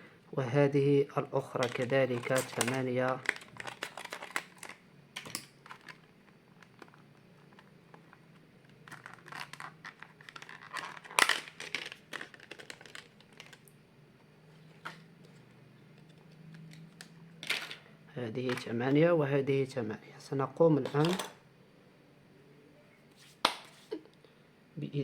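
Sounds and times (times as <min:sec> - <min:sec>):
crinkling rustles: 0:01.5 - 0:13.8
plastic parts clicking: 0:01.6 - 0:13.7.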